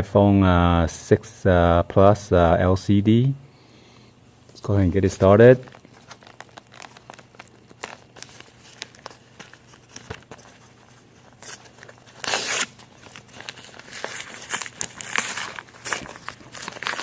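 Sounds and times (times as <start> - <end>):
packaging crinkling: 5.0 - 17.0
parcel tearing: 5.4 - 17.0.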